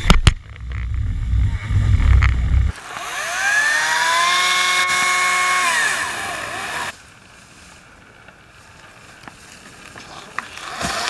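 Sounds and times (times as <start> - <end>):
electric chainsaw motor whine: 2.7 - 6.9.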